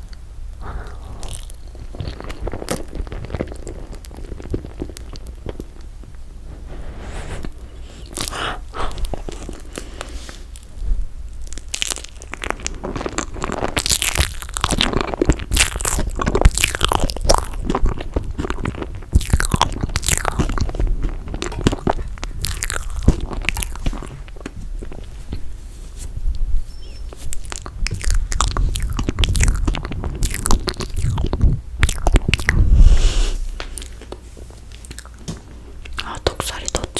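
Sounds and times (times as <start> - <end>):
sticky chewing and smacking: 0.1 - 6.2, 7.4 - 10.8, 11.4 - 32.8, 33.5 - 36.9.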